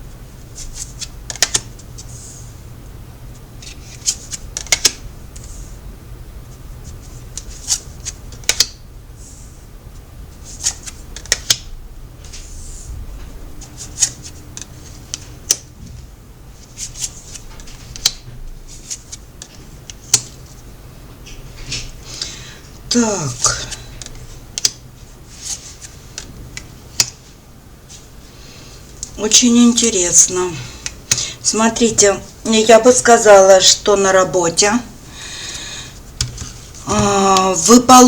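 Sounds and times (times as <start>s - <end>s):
low steady hum: 0.0s - 38.0s
cards being shuffled: 0.6s - 2.1s, 3.6s - 5.6s, 6.8s - 8.8s, 10.4s - 11.6s, 13.6s - 15.6s, 16.6s - 20.4s, 23.3s - 27.2s, 36.2s - 37.7s.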